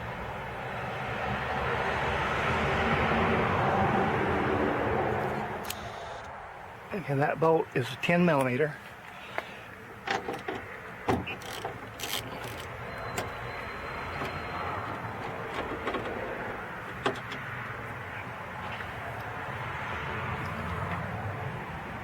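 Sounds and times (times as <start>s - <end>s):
passing vehicle rumble: 0.0s - 7.0s, 9.3s - 22.0s
tools clicking and knocking: 10.0s - 17.5s.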